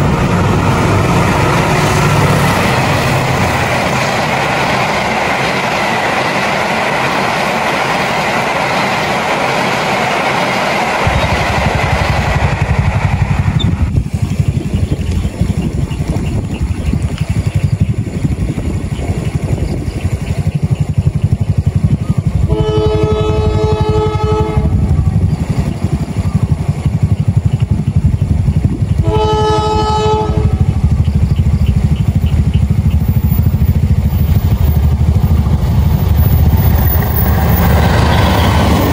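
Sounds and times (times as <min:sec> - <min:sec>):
train rumbling and rushing: 0:00.0 - 0:38.9
multi-tone train horn blasts: 0:22.4 - 0:25.0, 0:29.0 - 0:31.0, 0:37.8 - 0:38.9.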